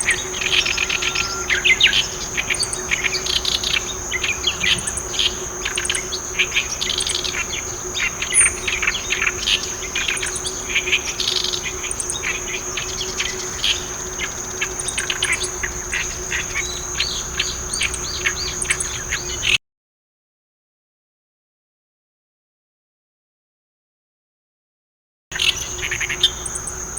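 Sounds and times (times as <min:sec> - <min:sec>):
high-pitched insect trill: 0:00.0 - 0:19.6, 0:25.4 - 0:26.9
warbler singing harsh chattering song: 0:00.0 - 0:19.6, 0:25.4 - 0:26.9.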